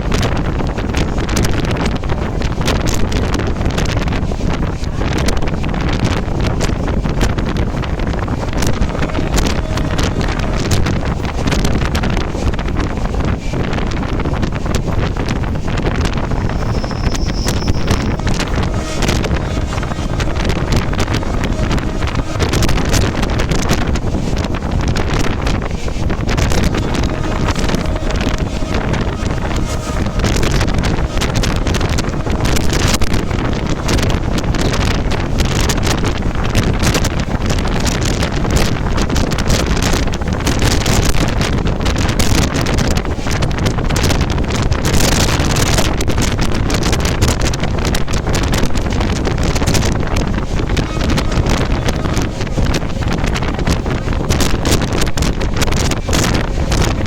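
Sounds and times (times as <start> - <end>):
low rumble of travel: 0.0 - 57.0
wind buffeting microphone: 0.0 - 57.0.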